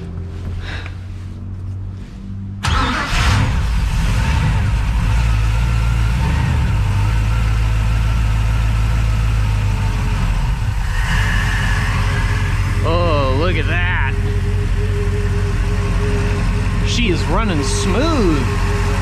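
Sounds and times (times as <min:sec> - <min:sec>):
boat engine starting and running: 0:02.6 - 0:07.7, 0:09.5 - 0:19.0.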